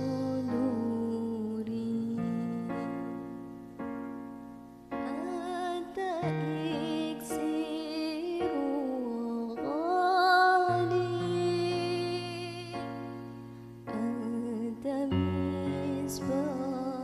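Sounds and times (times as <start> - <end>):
person singing long wavering notes: 0.0 - 3.3.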